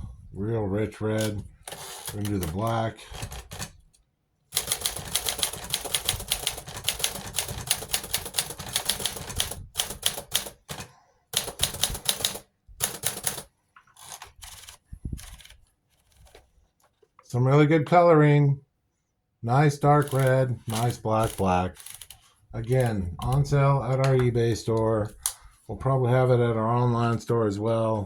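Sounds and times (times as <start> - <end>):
typewriter typing: 1.2 - 3.8, 4.5 - 16.4, 19.9 - 23.6.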